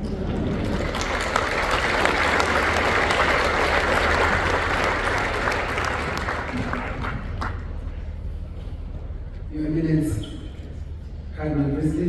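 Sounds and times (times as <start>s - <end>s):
large crowd applauding: 0.0s - 8.3s.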